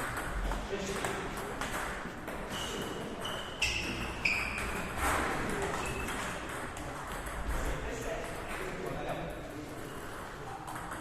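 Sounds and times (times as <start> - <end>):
short high-pitched squeaks: 2.5 - 4.8
ping pong ball clicks: 6.0 - 7.5, 10.6 - 11.0.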